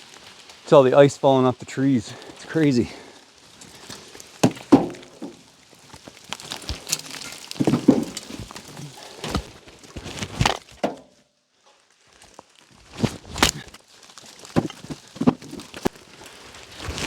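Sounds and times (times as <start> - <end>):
ice cracking off branches: 0.0 - 17.0.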